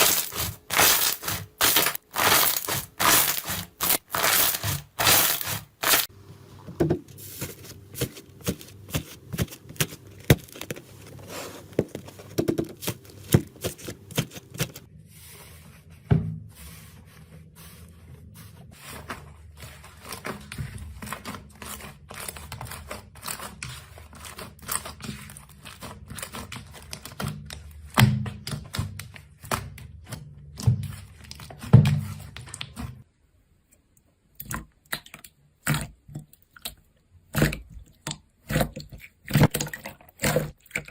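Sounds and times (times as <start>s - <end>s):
slime clicking and crackling: 0.0s - 6.1s
squishy thuds: 0.0s - 6.1s.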